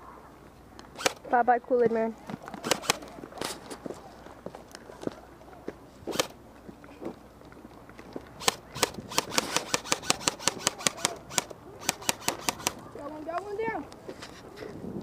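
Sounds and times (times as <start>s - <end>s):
airsoft gun shots: 2.6s - 3.0s, 6.1s - 6.3s, 8.4s - 12.8s.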